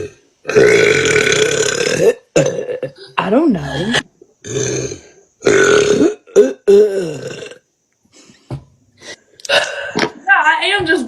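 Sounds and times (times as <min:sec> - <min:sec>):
woman burping loudly: 0:00.0 - 0:07.7, 0:09.4 - 0:10.1.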